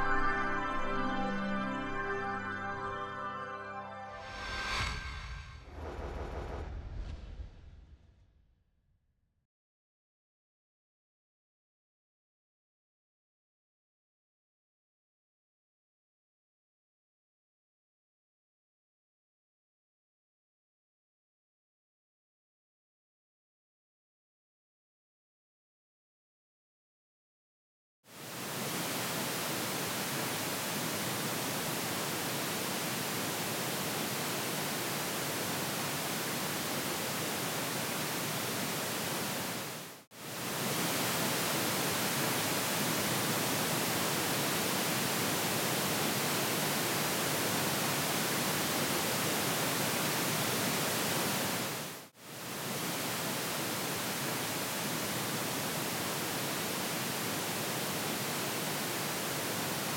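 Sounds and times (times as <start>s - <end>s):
pink noise hiss: 28.1s - 59.9s.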